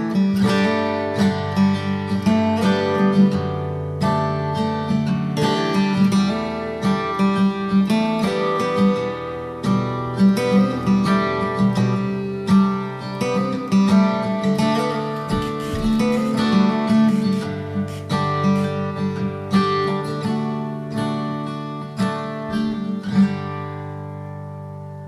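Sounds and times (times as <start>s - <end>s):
acoustic guitar music: 0.0s - 25.0s.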